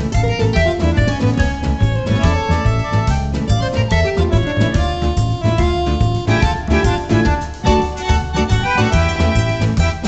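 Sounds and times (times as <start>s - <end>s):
instrumental music with strings and bass beat: 0.0s - 10.0s.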